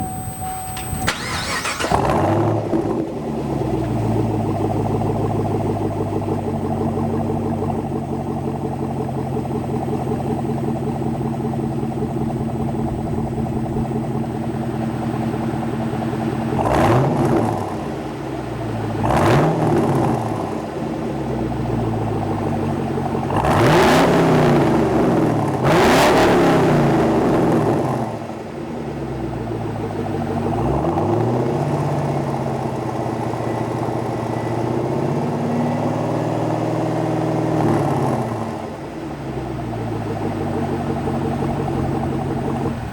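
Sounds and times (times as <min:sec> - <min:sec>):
car engine idling loudly: 0:00.0 - 0:42.9
car engine revving: 0:00.0 - 0:42.9
car engine starting up: 0:00.0 - 0:42.9.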